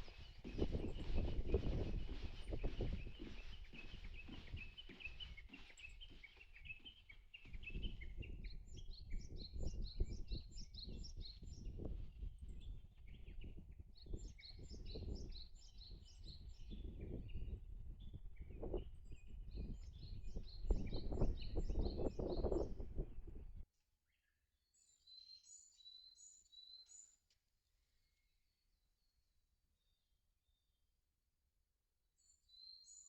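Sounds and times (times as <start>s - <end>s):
rustling and soft knocks: 0.0s - 8.6s.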